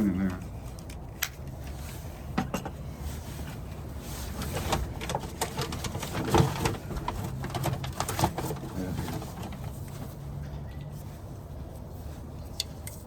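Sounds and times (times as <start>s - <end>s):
cans and cardboard handled: 4.3s - 10.2s.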